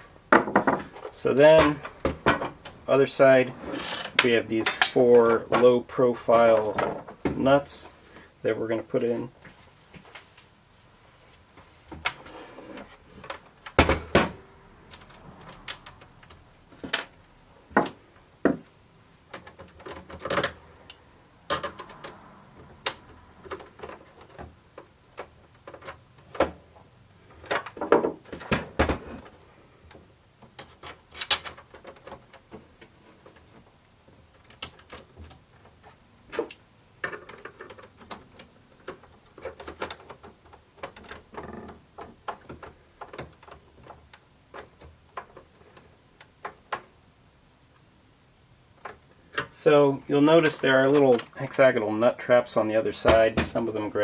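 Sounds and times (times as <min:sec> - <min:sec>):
rattling of small parts: 0:03.5 - 0:05.7, 0:19.2 - 0:47.0.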